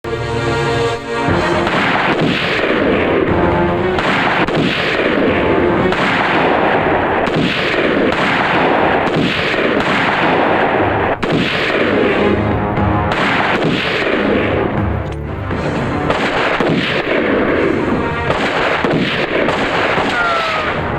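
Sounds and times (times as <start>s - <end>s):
background film music: 0.0s - 20.9s
gunshot bangs: 1.3s - 14.9s, 16.0s - 20.8s.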